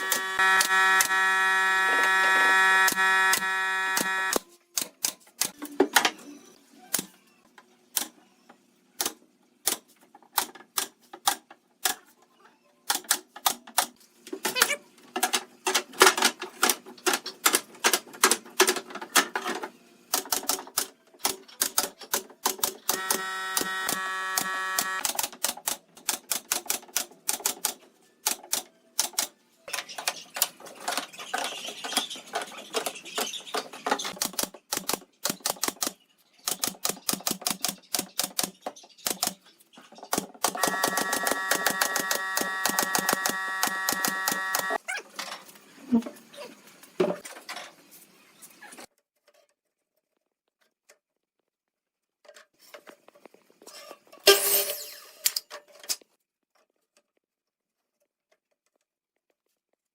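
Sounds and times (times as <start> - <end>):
power tool whine: 0.0 - 4.4, 22.9 - 25.0, 40.6 - 44.8.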